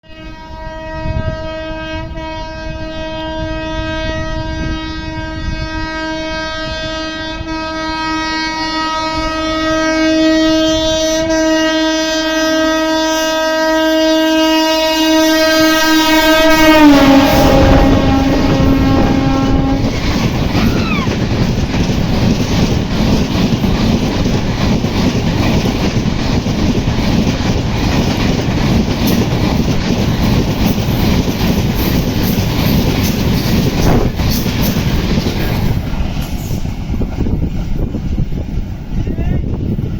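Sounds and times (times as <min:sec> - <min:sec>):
locomotive horn blast: 0:00.0 - 0:21.1
train coaches rushing past: 0:08.5 - 0:39.9.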